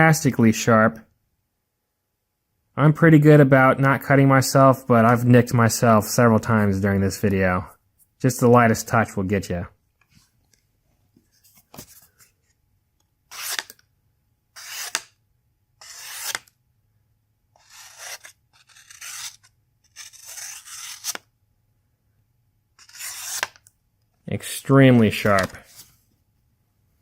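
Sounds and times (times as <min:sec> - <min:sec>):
knife blade slicing paper: 0:13.3 - 0:13.8, 0:14.6 - 0:15.2, 0:15.8 - 0:16.5, 0:17.6 - 0:21.3, 0:22.8 - 0:23.7, 0:25.1 - 0:25.9.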